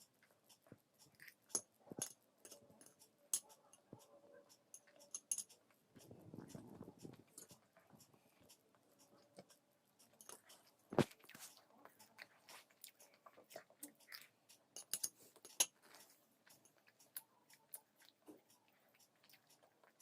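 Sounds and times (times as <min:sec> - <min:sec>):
person chewing: 0:05.7 - 0:20.0.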